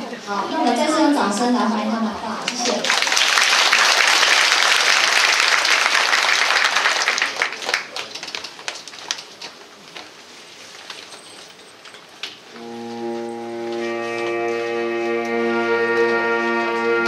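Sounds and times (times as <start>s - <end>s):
audience applauding: 2.5s - 9.0s.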